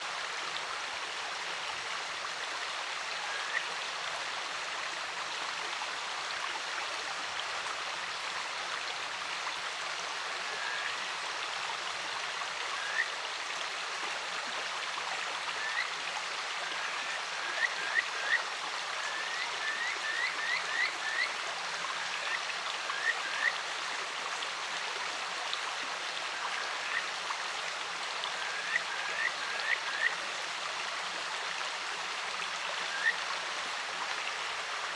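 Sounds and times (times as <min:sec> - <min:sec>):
mountain stream running: 0:00.0 - 0:34.9
frogs calling: 0:19.1 - 0:21.3.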